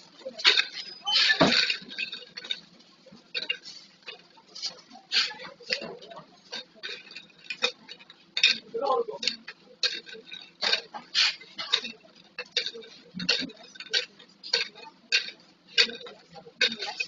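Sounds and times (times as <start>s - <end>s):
plastic bottles clacking together: 0.0s - 17.0s.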